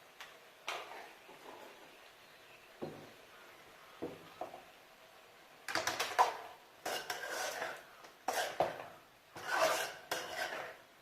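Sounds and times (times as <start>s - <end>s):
spoon scraping cooking pan: 6.2s - 10.9s.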